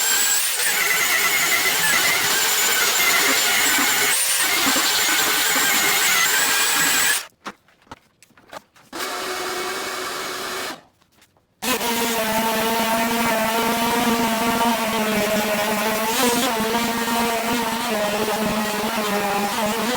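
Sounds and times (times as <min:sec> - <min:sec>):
power tool high whine: 0:00.0 - 0:07.2.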